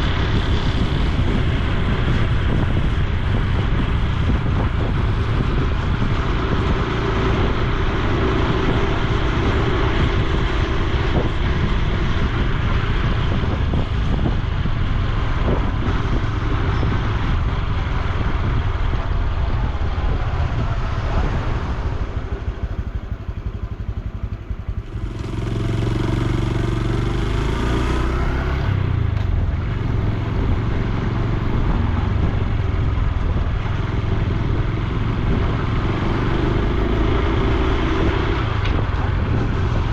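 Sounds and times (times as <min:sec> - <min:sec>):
motorcycle engine running: 0:00.0 - 0:39.9
wind on microphone: 0:00.0 - 0:39.9.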